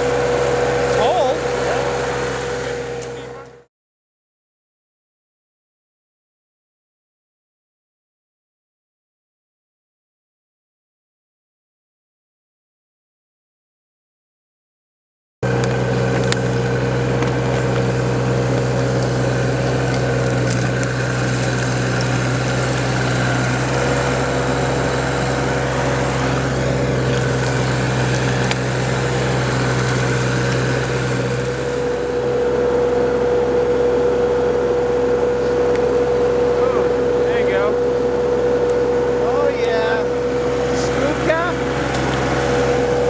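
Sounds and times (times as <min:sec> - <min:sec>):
backhoe diesel engine running: 0:00.0 - 0:03.7, 0:15.4 - 0:43.0.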